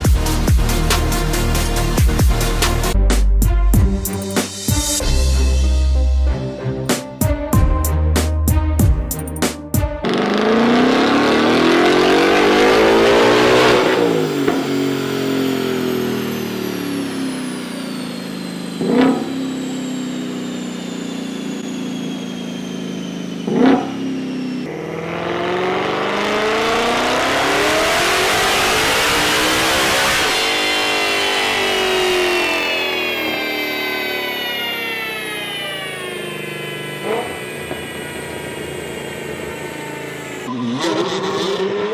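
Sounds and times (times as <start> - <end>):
car engine revving: 0.0 - 3.0, 9.8 - 41.9
thin high whine: 24.7 - 40.5.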